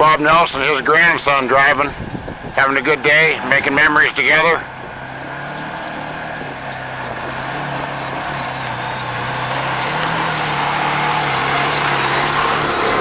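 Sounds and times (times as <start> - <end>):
off-road vehicle engine running: 0.0 - 13.0.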